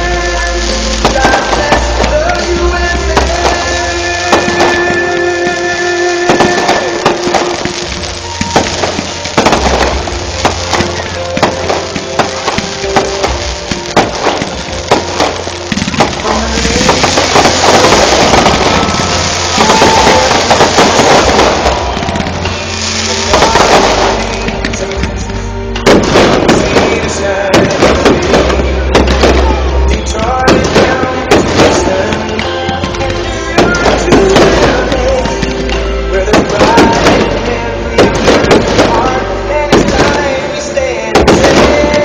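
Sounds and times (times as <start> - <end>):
fireworks cracking and banging: 0.0 - 42.0
loud music: 0.0 - 42.0.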